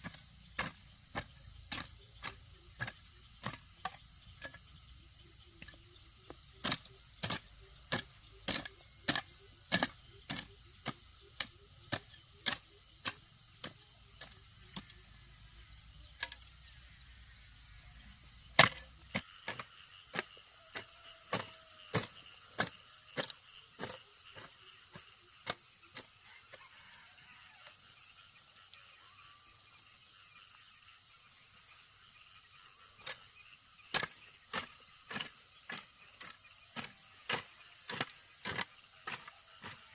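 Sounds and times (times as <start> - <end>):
crickets chirping: 0.0 - 39.9
tool striking wood: 18.6 - 24.5.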